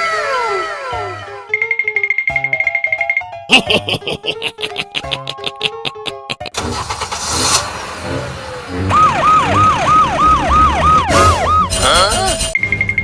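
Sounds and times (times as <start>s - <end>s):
siren sound effect yelping: 0.0s - 1.2s, 8.7s - 12.6s
vehicle engine noise: 6.4s - 12.6s.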